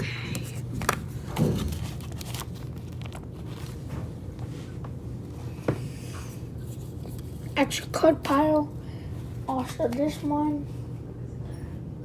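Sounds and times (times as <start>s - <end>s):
trading cards being sorted: 0.0s - 4.4s
steady low hum: 0.0s - 12.0s.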